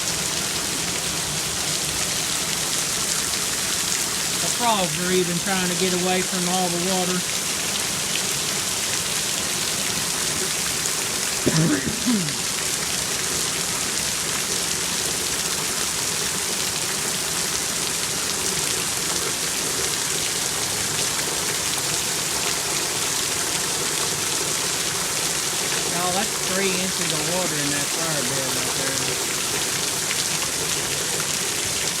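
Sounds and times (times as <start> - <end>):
heavy rain pouring: 0.0 - 32.0.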